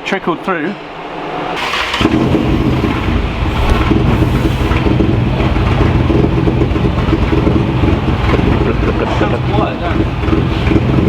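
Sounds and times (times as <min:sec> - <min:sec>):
car engine starting and idling: 0:01.6 - 0:09.0.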